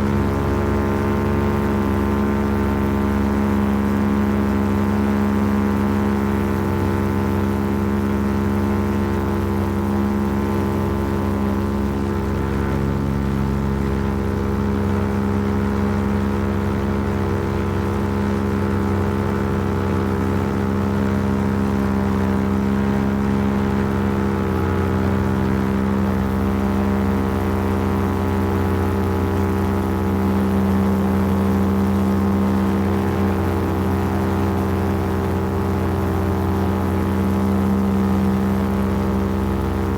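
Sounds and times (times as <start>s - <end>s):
paramotor engine and propeller: 0.0s - 39.9s.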